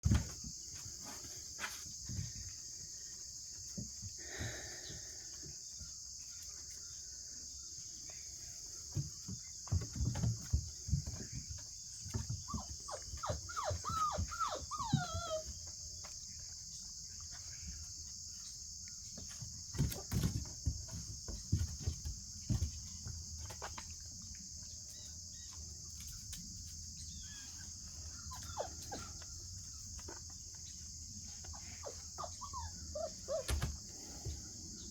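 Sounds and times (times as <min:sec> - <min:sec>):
insects chirping: 0:00.0 - 0:34.9.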